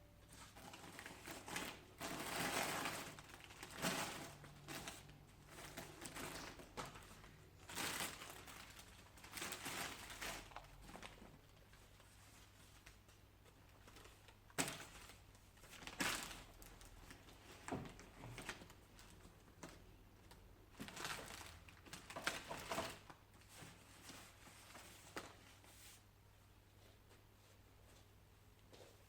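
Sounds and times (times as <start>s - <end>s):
paper rustling: 20.8s - 26.1s.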